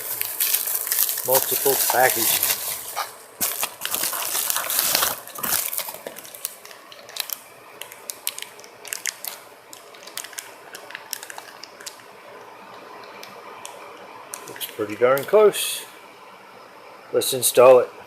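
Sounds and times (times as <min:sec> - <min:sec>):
packaging crinkles and clicks: 0:00.0 - 0:12.1
packaging rustling: 0:00.0 - 0:12.1.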